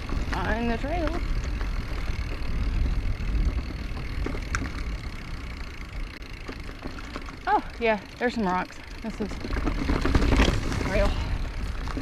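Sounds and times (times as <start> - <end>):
wind rumble on microphone: 0.0 - 6.0
bike clicks and rattles: 0.0 - 12.0.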